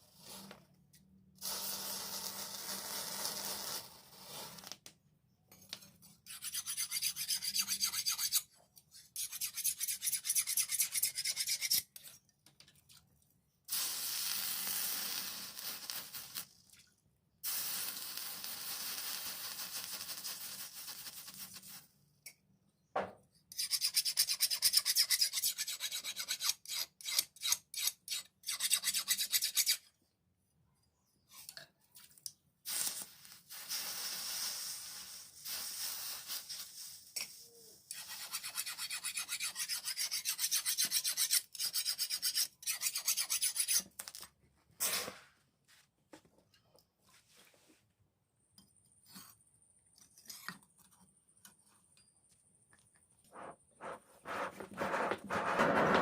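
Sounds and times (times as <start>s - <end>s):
file rasping on steel: 6.2s - 8.5s, 9.1s - 12.0s, 23.5s - 29.9s, 37.9s - 44.0s.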